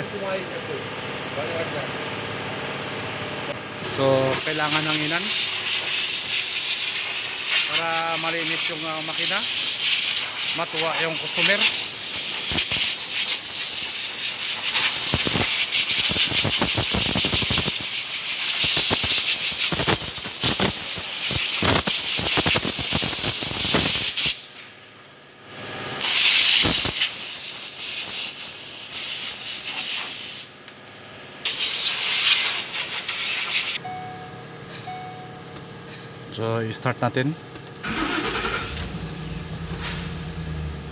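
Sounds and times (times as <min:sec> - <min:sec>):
pressurised spray hissing: 0:04.4 - 0:24.4, 0:26.0 - 0:30.5, 0:31.5 - 0:33.8.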